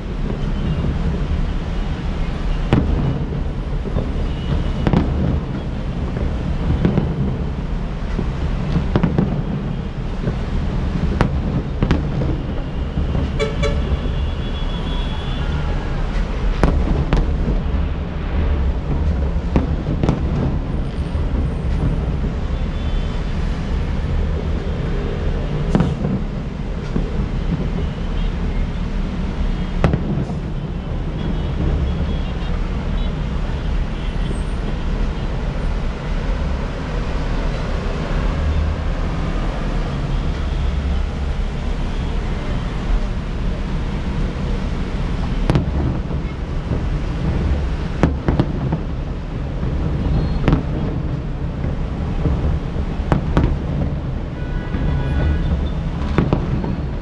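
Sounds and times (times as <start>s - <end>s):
fireworks bangs: 0.0s - 57.0s
low rumble of city traffic: 0.0s - 57.0s
vehicle horn toot: 12.6s - 15.8s, 54.4s - 55.6s.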